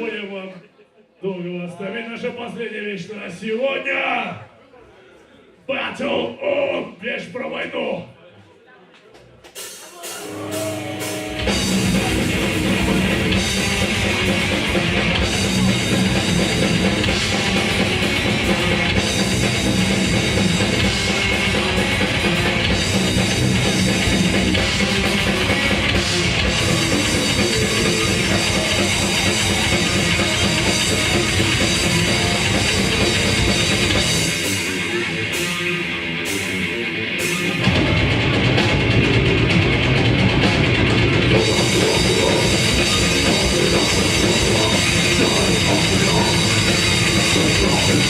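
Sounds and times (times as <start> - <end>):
death metal band playing: 9.6 - 48.0.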